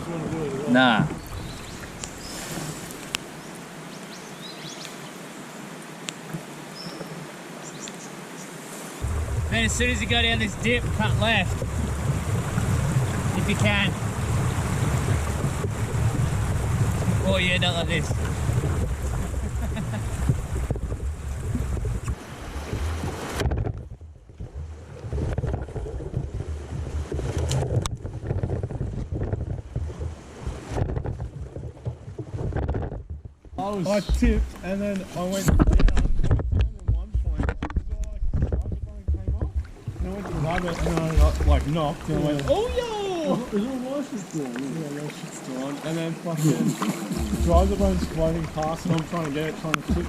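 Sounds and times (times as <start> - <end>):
river water over rocks: 0.0 - 36.6, 39.4 - 50.0
wind buffeting microphone: 9.0 - 43.6, 46.6 - 50.0
river rapids rushing: 44.9 - 50.0.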